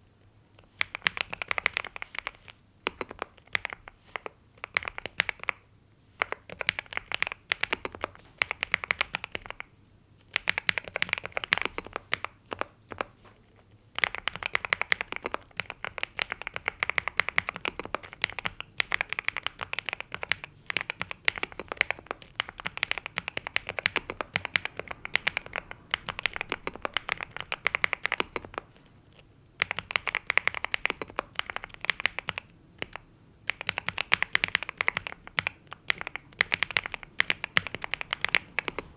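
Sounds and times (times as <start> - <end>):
typing on mechanical keyboard: 0.6 - 5.6, 6.2 - 13.2, 13.9 - 38.9.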